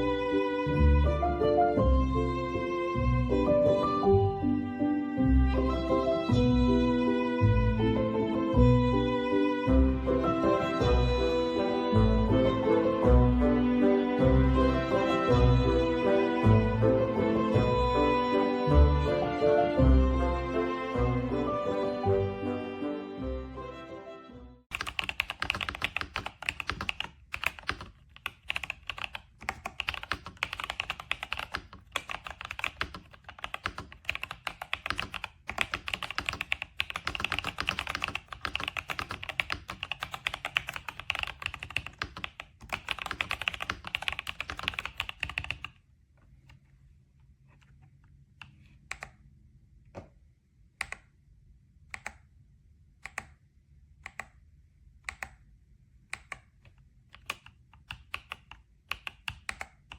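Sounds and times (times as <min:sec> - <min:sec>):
mechanical keyboard typing: 0:24.7 - 0:45.8, 0:53.0 - 0:53.4, 0:56.1 - 0:59.9.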